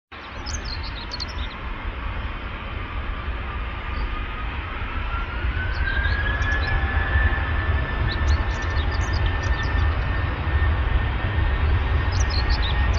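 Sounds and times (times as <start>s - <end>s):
faint birds chirping: 0.2s - 2.5s
jet engine whine: 0.2s - 12.9s
low engine rumble: 0.2s - 12.9s.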